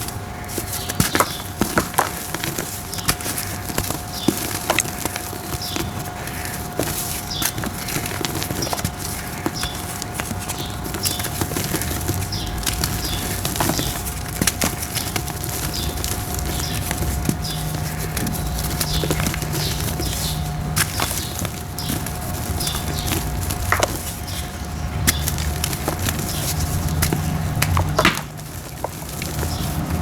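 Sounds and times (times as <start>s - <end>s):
dry dirt crumbling by hand: 0.0s - 30.0s
faint steady hum: 0.0s - 30.0s.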